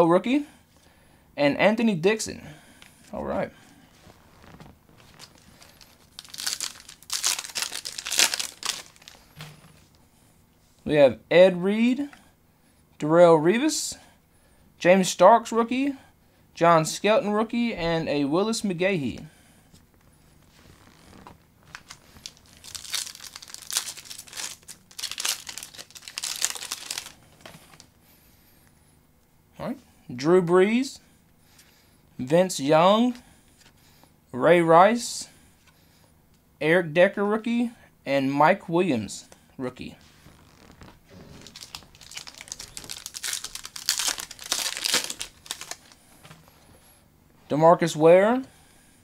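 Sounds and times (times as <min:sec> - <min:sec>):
wrapper tearing and crinkling: 0:04.3 - 0:09.3, 0:20.8 - 0:27.8, 0:40.3 - 0:46.0.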